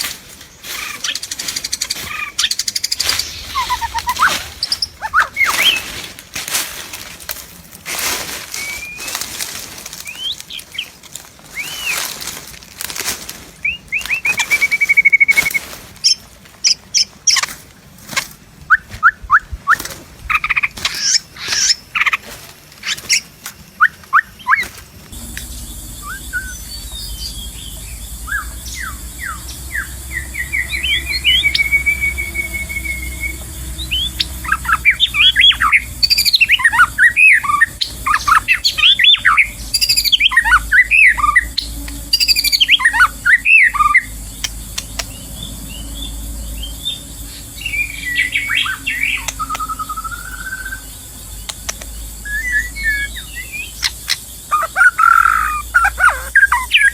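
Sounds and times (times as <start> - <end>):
steady low rumble: 0.0 - 56.9
bird singing whistles and chatter: 0.6 - 6.0, 8.5 - 10.9, 11.5 - 12.4, 13.6 - 16.2, 22.8 - 56.9.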